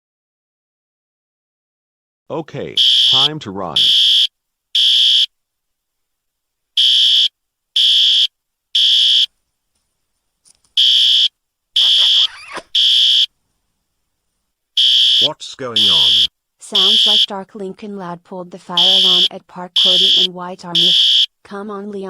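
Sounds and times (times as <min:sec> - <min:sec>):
fire alarm beeping: 0:02.8 - 0:05.3, 0:06.8 - 0:09.3, 0:10.8 - 0:13.3, 0:14.8 - 0:17.3, 0:18.8 - 0:21.3.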